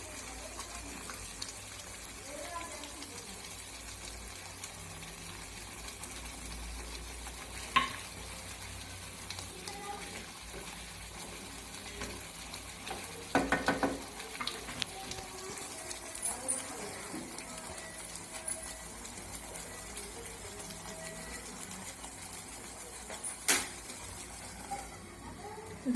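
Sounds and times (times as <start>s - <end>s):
paste sizzling in a pan: 0.0s - 25.9s
spatula clattering against pan: 12.8s - 14.7s.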